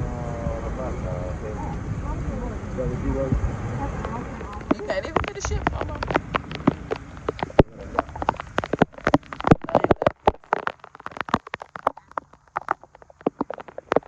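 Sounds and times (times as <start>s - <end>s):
faint rain hiss: 0.0s - 14.0s
raindrops tapping: 4.0s - 14.0s.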